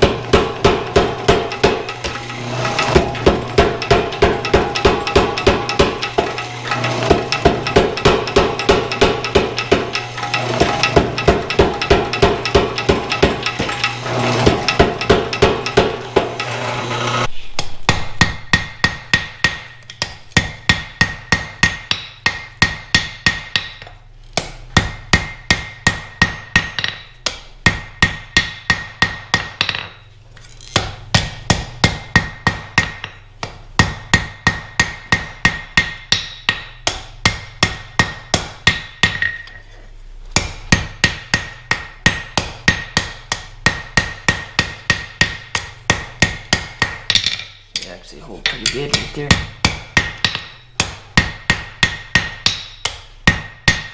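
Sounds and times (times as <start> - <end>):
high ring from metal: 0.0 - 17.3
power hammer striking hot steel: 0.0 - 30.0, 30.7 - 39.7, 40.4 - 53.9.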